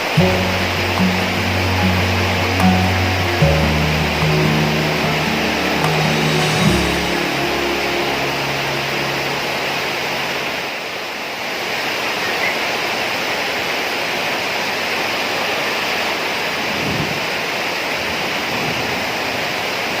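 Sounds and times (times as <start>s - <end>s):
low background music: 0.0s - 10.6s
steady rain falling: 0.0s - 20.0s.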